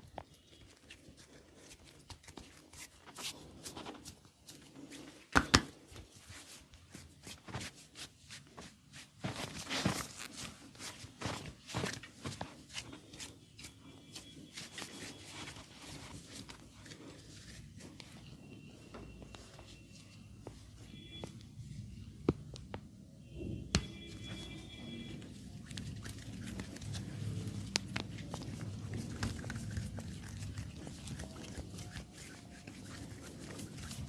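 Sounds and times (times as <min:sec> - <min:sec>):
rustling: 0:05.8 - 0:21.4, 0:24.1 - 0:34.0.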